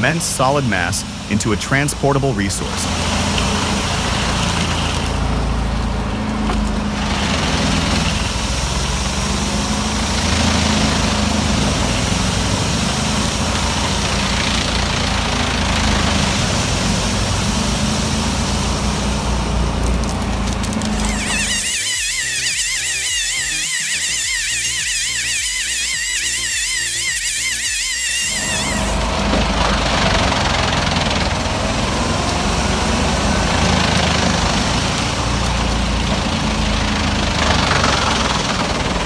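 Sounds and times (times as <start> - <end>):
wood chipper engine drone: 0.0 - 39.0
tree being chipped: 6.3 - 29.2.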